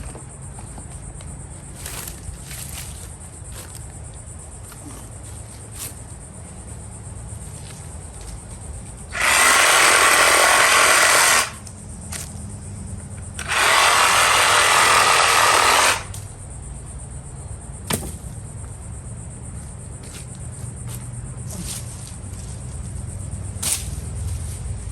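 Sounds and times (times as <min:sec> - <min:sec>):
electric wood chipper running: 0:09.1 - 0:11.7, 0:13.4 - 0:16.2.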